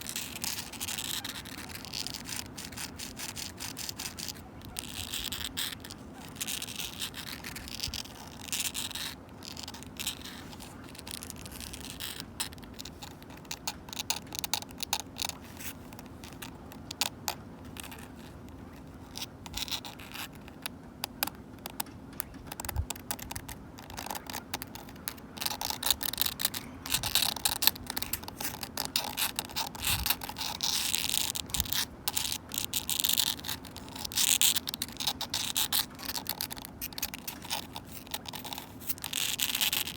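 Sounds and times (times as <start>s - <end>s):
fingernails scratching on wood: 0.0s - 39.9s.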